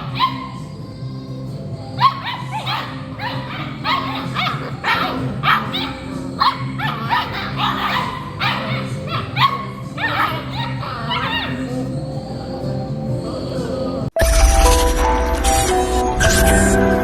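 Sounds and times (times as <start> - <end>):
puppies yipping and barking: 0.0 - 12.7
background music: 0.0 - 17.0.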